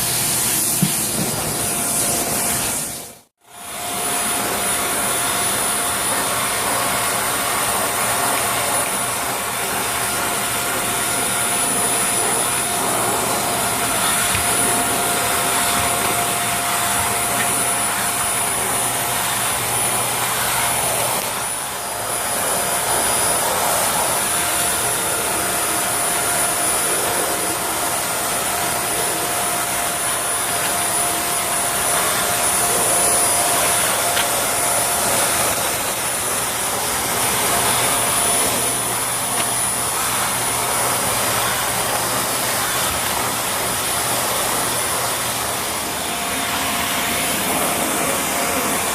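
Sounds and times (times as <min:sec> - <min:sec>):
upright vacuum cleaner running: 0:00.0 - 0:48.9.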